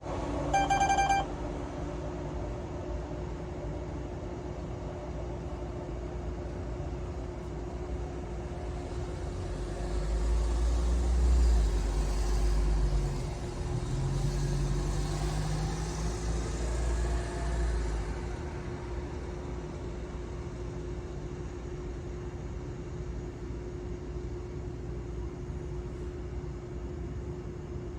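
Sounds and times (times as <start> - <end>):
steady machine hum: 0.4 - 1.4.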